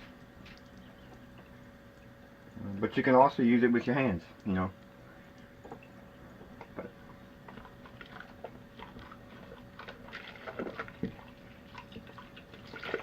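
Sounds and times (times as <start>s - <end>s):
wet lather squelches: 7.5s - 13.0s.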